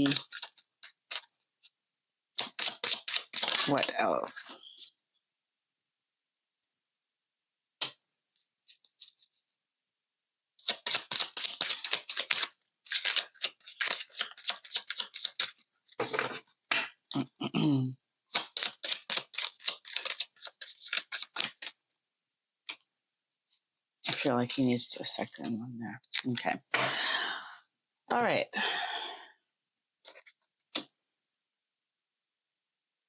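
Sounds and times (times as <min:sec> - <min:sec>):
cards being shuffled: 0:00.0 - 0:01.3, 0:02.4 - 0:03.9, 0:10.6 - 0:16.3, 0:18.3 - 0:21.8, 0:26.1 - 0:26.5.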